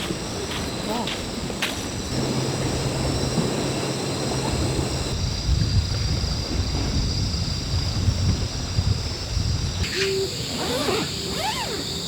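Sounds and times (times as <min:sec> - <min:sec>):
surf washing: 0:00.0 - 0:07.7
wind buffeting microphone: 0:00.0 - 0:12.0
low steady hum: 0:02.1 - 0:05.2.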